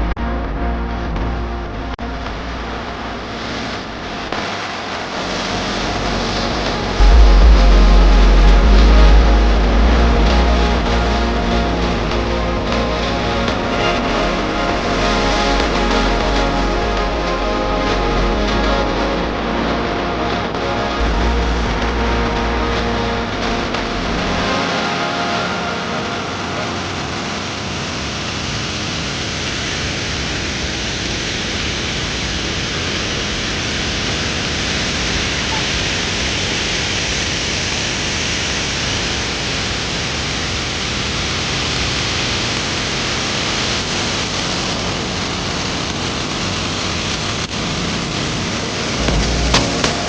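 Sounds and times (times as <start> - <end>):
waterfall roaring: 3.6 - 50.0
low rumble: 5.8 - 24.5, 48.6 - 50.0.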